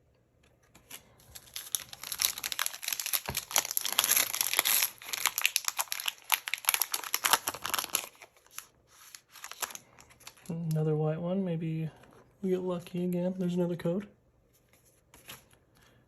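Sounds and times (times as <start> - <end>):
foil wrapper crinkling: 0.8 - 10.7.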